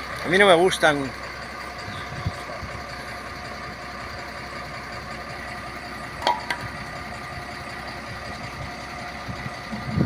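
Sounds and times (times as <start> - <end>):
engine idling: 0.0 - 10.0
sharp metallic knocks: 6.2 - 6.7.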